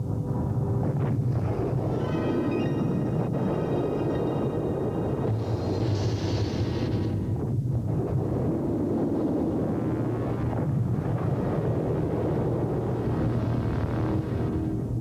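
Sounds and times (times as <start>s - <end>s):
low synthesizer score: 1.4s - 7.4s.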